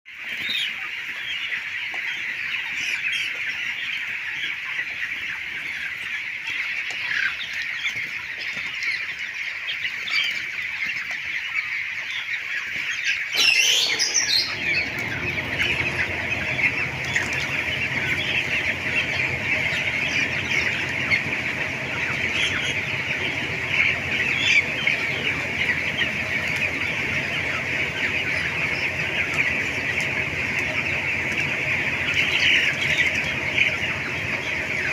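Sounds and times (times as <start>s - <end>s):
chickens clucking and cheeping: 0.1s - 34.9s
chicken squawk: 9.7s - 34.9s
low steady hum: 13.8s - 34.9s.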